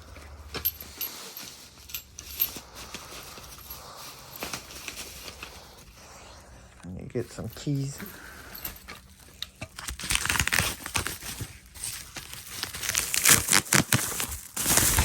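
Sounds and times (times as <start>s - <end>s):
plastic packaging crinkling: 8.8s - 15.0s.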